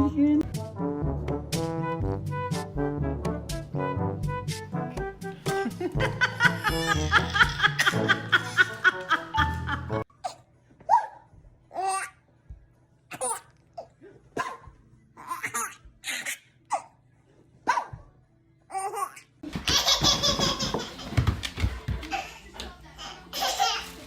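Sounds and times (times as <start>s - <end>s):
baby laughing: 6.0s - 10.4s, 13.1s - 14.0s, 15.2s - 17.0s, 18.7s - 21.2s, 23.0s - 24.0s.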